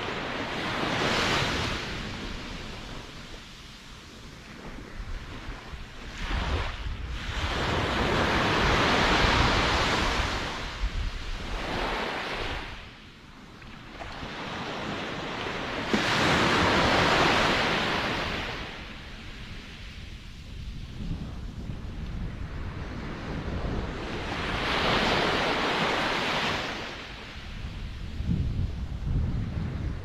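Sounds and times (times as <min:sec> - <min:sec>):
low rumble of surf: 0:00.0 - 0:30.0
wind on microphone: 0:04.1 - 0:12.9, 0:13.6 - 0:30.0
ocean waves breaking: 0:13.8 - 0:19.8, 0:22.6 - 0:27.9.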